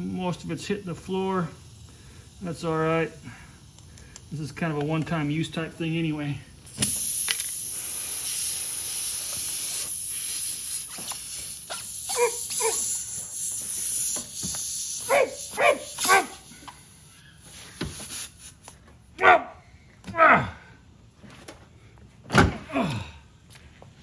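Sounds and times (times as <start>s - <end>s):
air hissing from tire: 0.0s - 19.1s.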